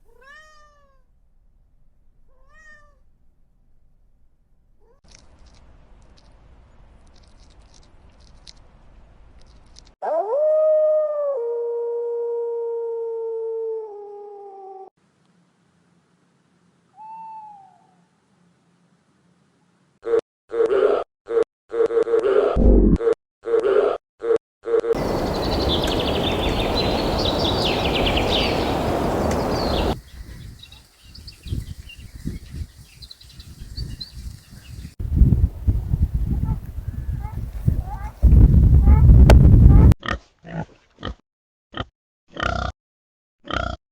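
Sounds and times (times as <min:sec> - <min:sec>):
low background noise: 0:15.0 - 0:17.0, 0:25.0 - 0:30.0
steady rushing noise: 0:25.0 - 0:30.0
birds chirping in high trills: 0:25.0 - 0:35.0.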